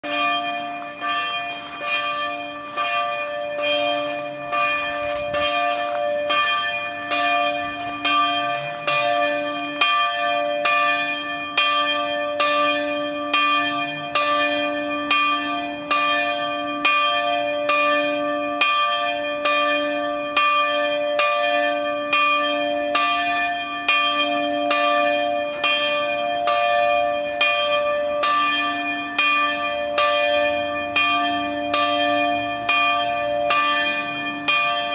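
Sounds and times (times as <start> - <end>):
church bell pealing: 0.0 - 34.9.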